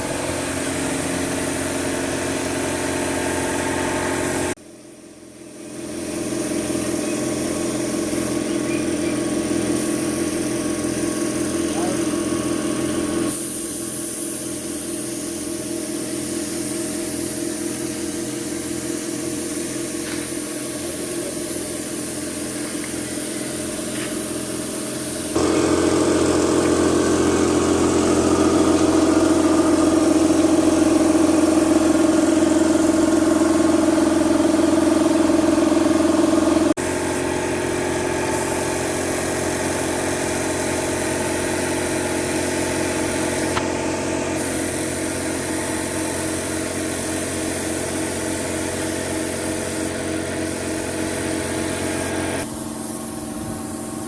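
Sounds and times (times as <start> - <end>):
engine running steadily: 0.0 - 54.0.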